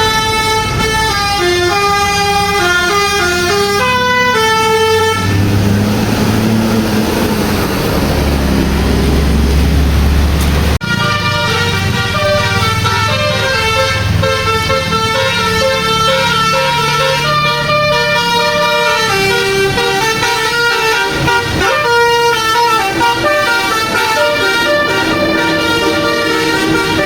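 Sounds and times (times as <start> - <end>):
bus horn playing a melody: 0.0 - 5.8, 10.8 - 27.0
low hum: 23.9 - 27.0.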